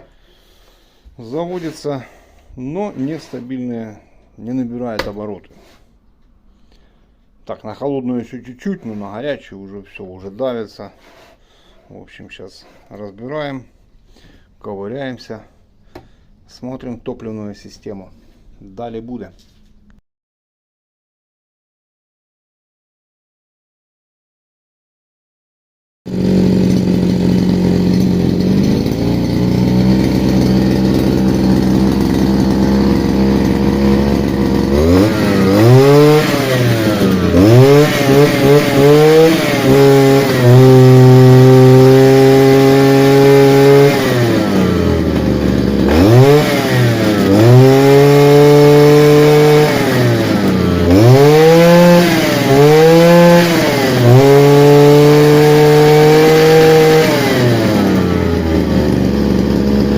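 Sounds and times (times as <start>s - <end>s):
brush cutter engine revving: 0.0s - 4.0s, 26.1s - 59.9s.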